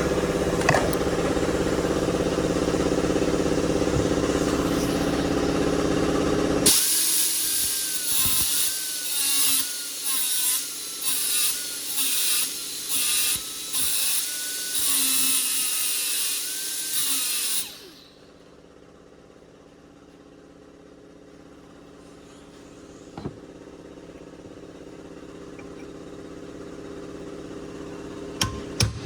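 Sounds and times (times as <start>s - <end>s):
power tool whining: 0.0s - 18.4s
steady mechanical hum: 0.0s - 29.0s.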